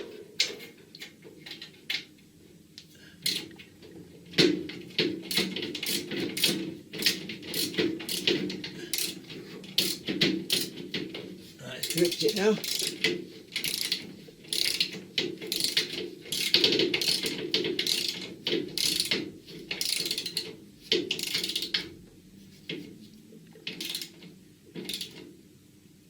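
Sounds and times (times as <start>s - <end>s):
hand ratchet clicking: 3.2s - 3.5s, 4.4s - 11.1s, 11.8s - 22.0s, 23.7s - 24.2s, 24.8s - 25.2s.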